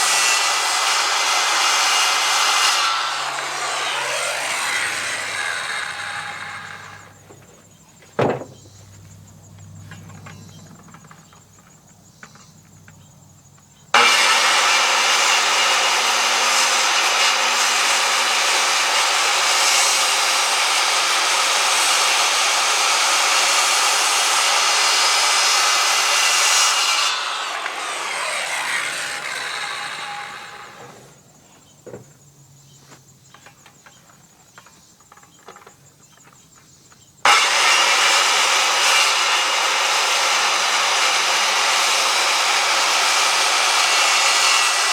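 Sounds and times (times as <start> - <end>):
chainsaw sawing through wood: 0.0 - 7.4, 13.9 - 31.2, 37.2 - 44.9
chainsaw idling: 3.0 - 7.4, 27.2 - 30.9
knock: 8.2 - 8.7.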